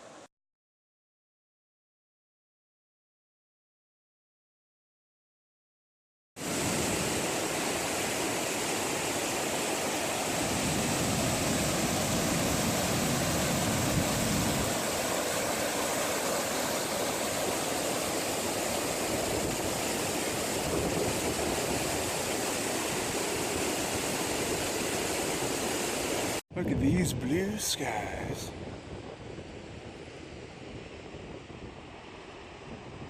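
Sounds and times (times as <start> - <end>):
creek water rushing: 6.4 - 26.4.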